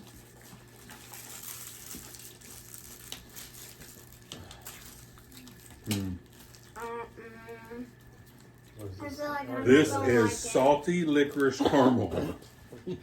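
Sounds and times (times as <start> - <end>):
snack packaging crinkling: 0.0 - 7.2, 10.1 - 12.3.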